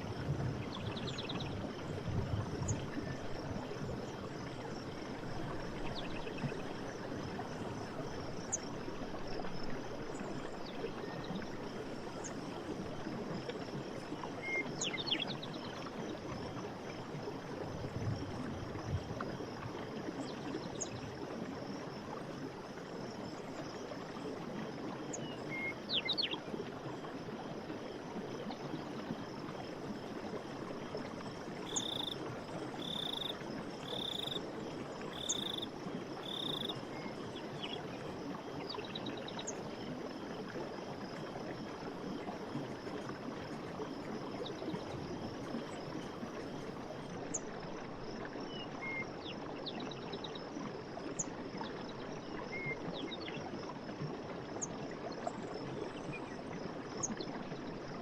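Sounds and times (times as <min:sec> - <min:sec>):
running water rushing: 0:00.0 - 0:58.0.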